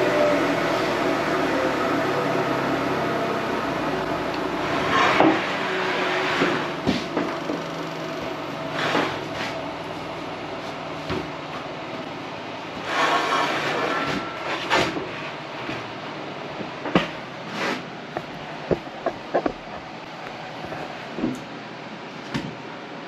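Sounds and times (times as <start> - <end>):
table saw ripping a board: 12.8 - 15.0.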